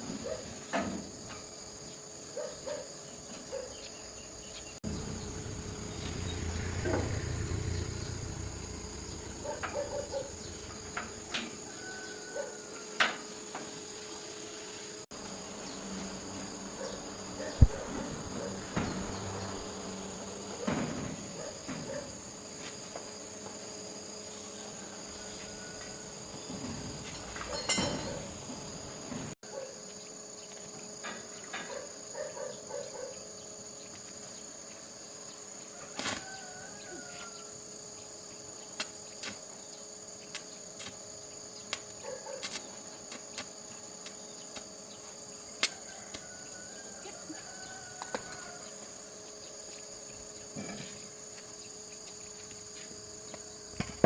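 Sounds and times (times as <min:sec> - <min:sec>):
insect trilling: 0:04.8 - 0:12.6.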